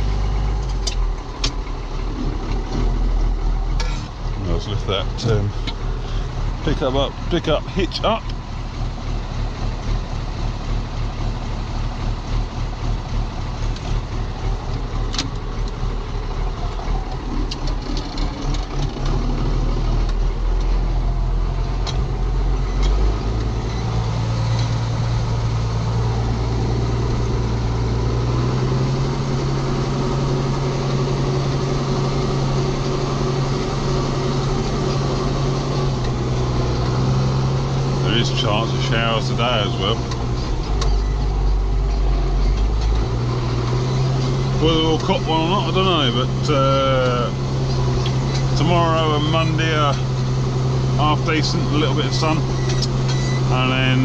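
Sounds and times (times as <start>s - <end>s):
diesel tractor engine running: 0.0s - 54.0s
sharp clicks and clunks: 0.6s - 2.9s, 14.7s - 15.8s, 16.7s - 19.2s, 21.8s - 23.9s, 40.0s - 44.3s.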